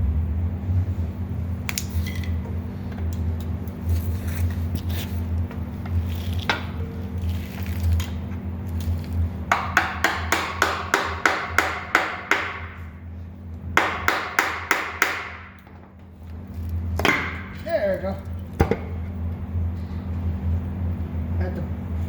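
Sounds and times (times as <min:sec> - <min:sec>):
hammer striking pry tool: 0:09.5 - 0:12.8, 0:13.8 - 0:15.5.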